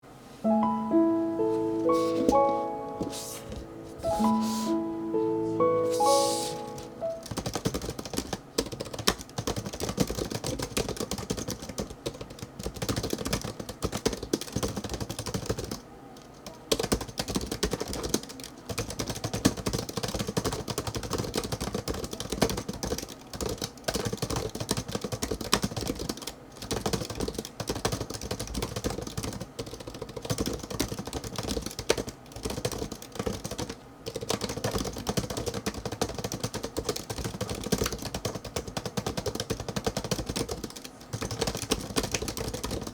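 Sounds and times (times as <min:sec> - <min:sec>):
fast typing on keyboard: 0:06.0 - 0:42.9.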